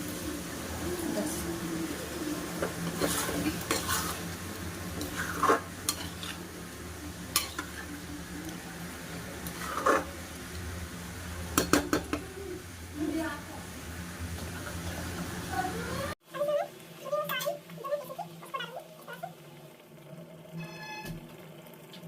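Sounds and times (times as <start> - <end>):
metal spoon scraping a pan: 2.6 - 6.5, 7.3 - 8.0, 9.4 - 10.2.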